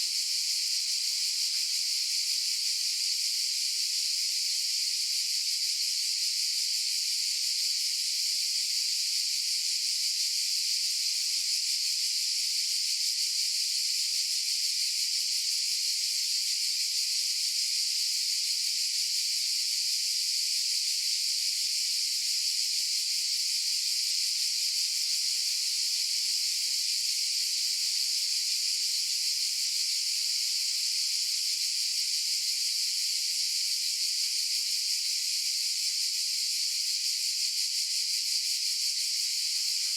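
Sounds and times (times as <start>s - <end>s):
cicadas buzzing: 23.5s - 39.9s.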